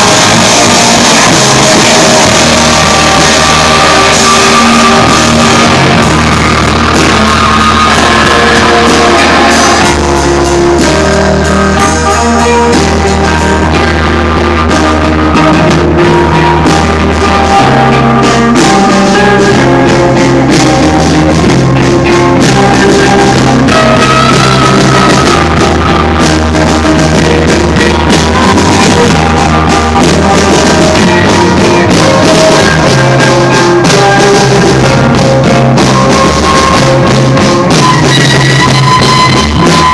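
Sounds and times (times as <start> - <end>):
held bass notes: 0.0 - 39.9
rock band playing live: 0.0 - 39.9
steady drumming: 0.0 - 39.9.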